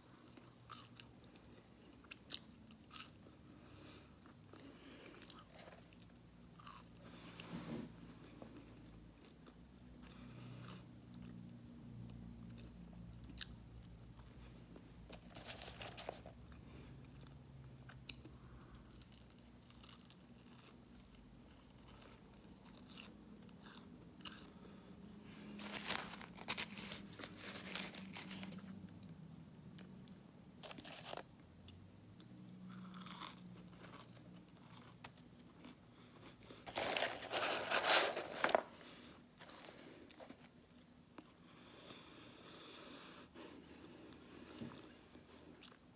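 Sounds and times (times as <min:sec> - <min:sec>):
crunching fast food: 0:00.2 - 0:03.5, 0:04.1 - 0:07.0, 0:12.1 - 0:14.4, 0:15.1 - 0:31.5, 0:32.2 - 0:41.4.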